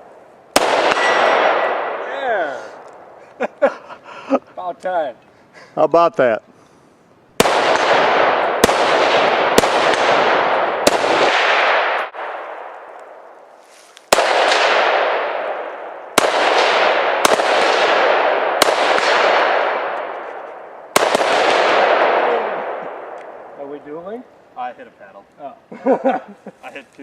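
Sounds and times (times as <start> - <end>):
rifle shots with echo: 0.1 - 3.2, 7.4 - 13.3, 14.1 - 23.8.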